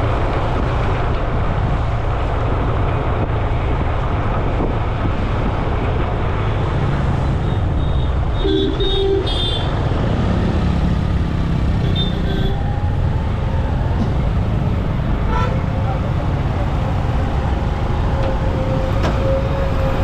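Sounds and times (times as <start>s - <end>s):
road traffic rumble: 0.0s - 20.0s
vehicle horns honking: 7.4s - 9.7s, 11.8s - 12.6s, 15.2s - 15.8s.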